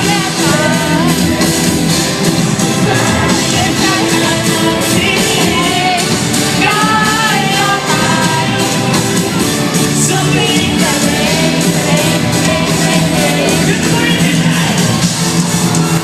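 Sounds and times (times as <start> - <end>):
person singing: 0.0 - 1.3, 2.8 - 9.0, 9.8 - 15.0
loud rock music: 0.0 - 16.0.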